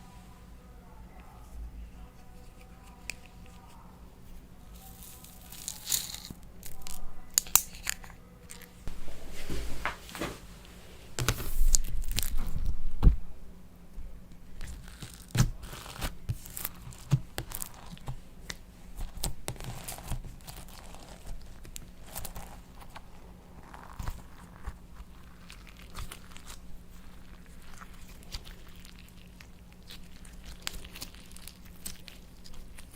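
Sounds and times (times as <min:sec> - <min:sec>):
slime crackling and popping: 0:04.8 - 0:08.7, 0:14.6 - 0:32.9.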